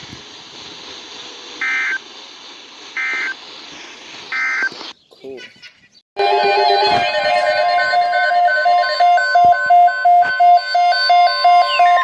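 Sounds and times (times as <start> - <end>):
alternating alarm tones: 6.2 - 12.0.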